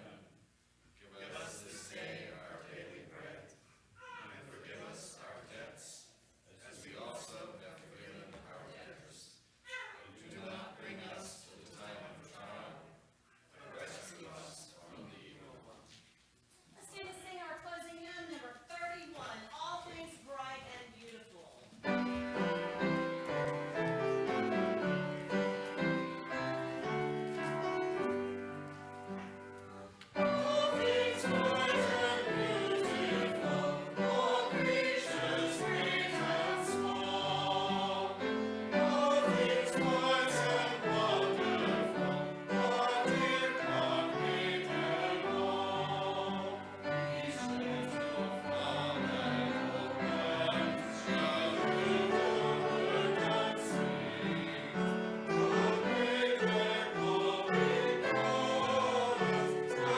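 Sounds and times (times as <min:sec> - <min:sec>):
choir singing with instruments: 0:01.2 - 0:03.6, 0:21.8 - 0:29.4, 0:30.0 - 0:59.9.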